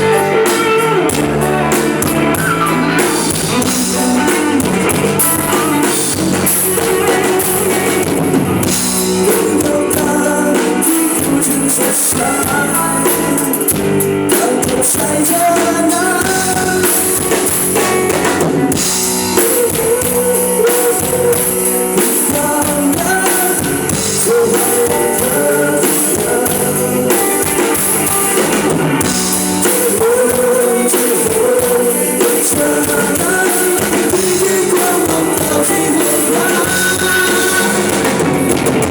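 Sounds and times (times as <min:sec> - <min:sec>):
person singing: 0:00.0 - 0:38.8
bass guitar: 0:00.0 - 0:38.9
drum kit: 0:00.0 - 0:38.9
electric guitar: 0:00.0 - 0:38.9.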